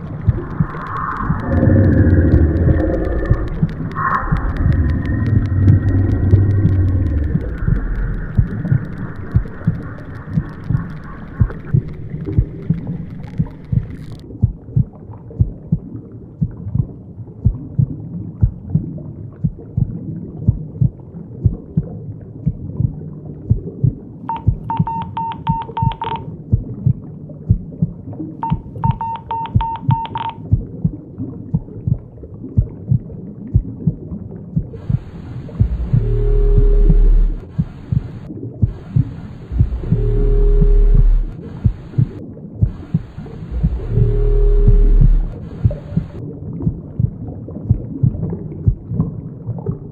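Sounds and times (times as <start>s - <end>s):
dull hum: 0.0s - 49.9s
low heartbeat-like thumping: 0.0s - 49.9s
noisy rumble with crackle: 0.0s - 49.9s
pulsing telephone-like ringing tone: 24.3s - 26.2s, 28.5s - 30.4s, 35.7s - 37.4s, 39.6s - 41.4s, 43.6s - 45.4s.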